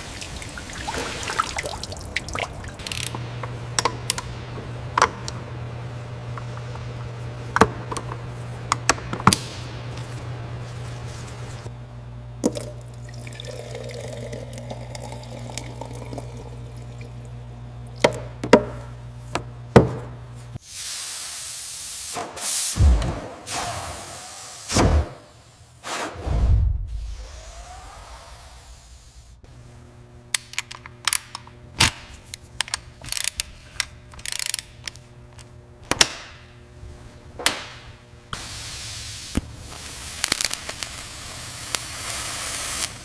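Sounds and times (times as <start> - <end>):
water pouring and dripping: 0.0 - 2.8
low machine hum: 0.0 - 20.6, 26.8 - 40.2
whoosh: 25.9 - 29.4.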